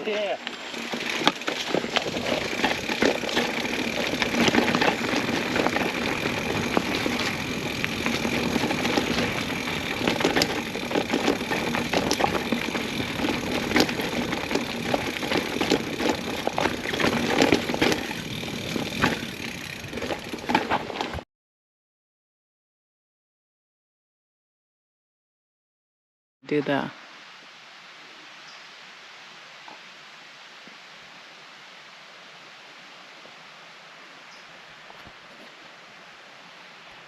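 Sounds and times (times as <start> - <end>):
bike chain and frame rattling: 0.0 - 21.2
bike tyres rumbling over gravel: 0.0 - 21.2.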